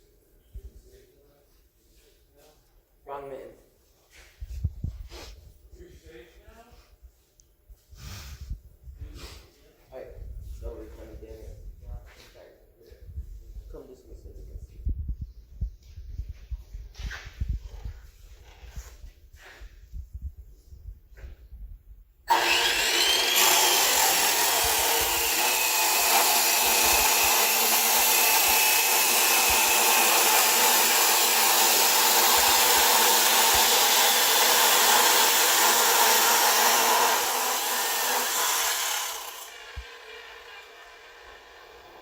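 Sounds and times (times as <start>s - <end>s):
electric miter saw running: 22.3s - 42.0s.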